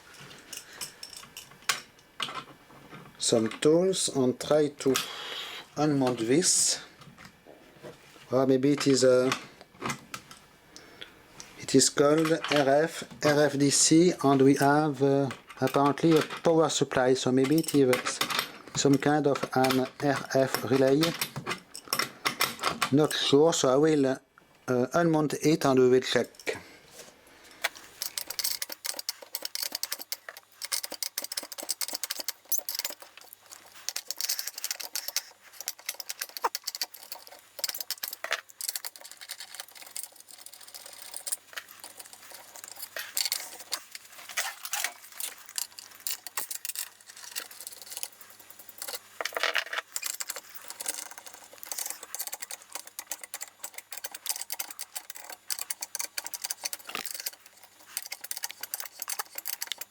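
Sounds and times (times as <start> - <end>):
metal tools clinking on metal: 27.9 - 59.9.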